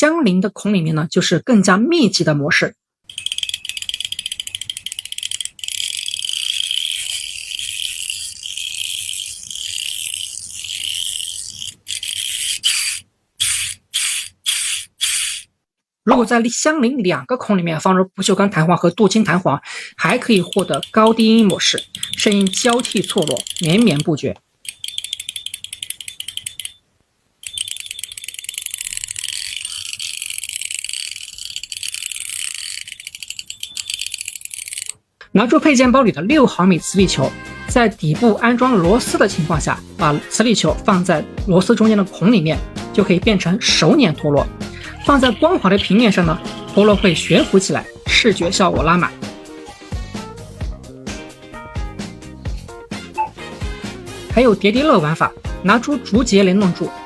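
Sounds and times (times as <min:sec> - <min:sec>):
fidget spinner ratchet clicking: 0:03.1 - 0:15.5, 0:20.0 - 0:26.8, 0:27.4 - 0:35.0, 0:44.8 - 0:47.7.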